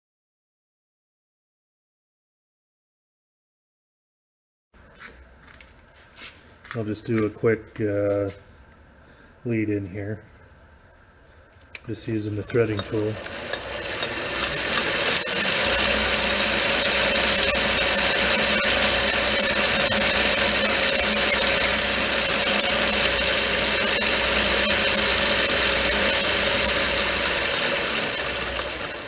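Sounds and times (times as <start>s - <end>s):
metal lathe cutting: 12.2s - 29.0s.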